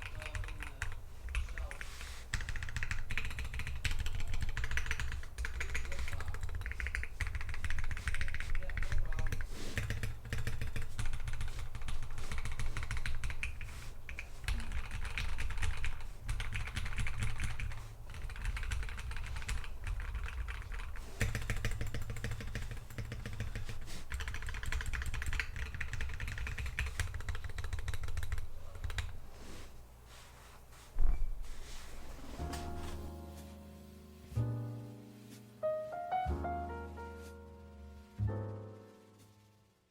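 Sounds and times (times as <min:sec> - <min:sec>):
mechanical keyboard typing: 0:00.0 - 0:29.1.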